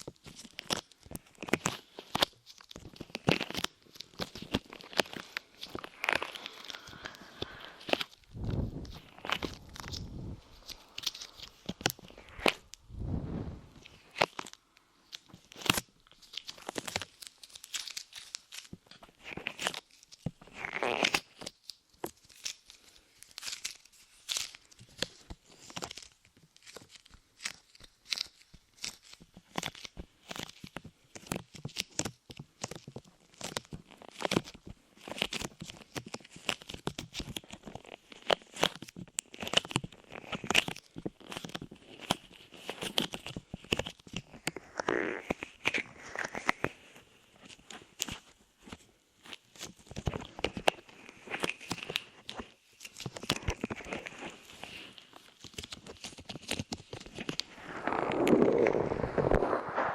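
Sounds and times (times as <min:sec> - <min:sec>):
clay crackling on a microphone: 0:00.0 - 0:59.9
clay tearing snaps: 0:00.2 - 0:12.9, 0:13.8 - 0:46.8.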